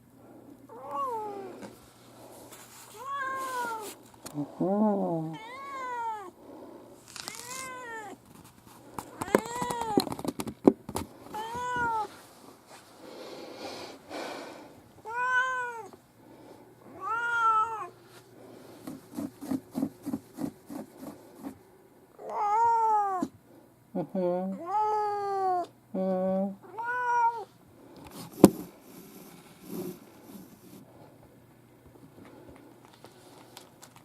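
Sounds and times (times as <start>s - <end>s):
cat meowing: 0.7s - 1.6s, 3.0s - 4.0s, 5.3s - 6.3s, 7.2s - 8.2s, 11.4s - 12.1s, 15.0s - 15.9s, 17.0s - 17.9s, 22.2s - 23.3s, 26.6s - 27.5s.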